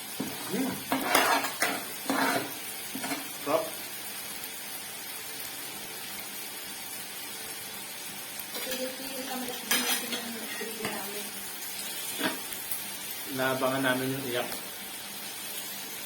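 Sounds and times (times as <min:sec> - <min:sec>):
meat sizzling on a grill: 0:00.0 - 0:16.0
utensils clinking: 0:08.6 - 0:11.1.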